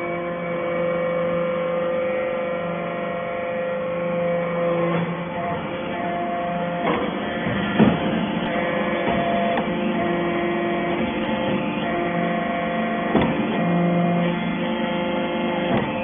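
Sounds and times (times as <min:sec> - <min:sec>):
hydraulic baler humming: 0:00.0 - 0:16.0
knocks: 0:06.8 - 0:09.8, 0:13.1 - 0:13.6.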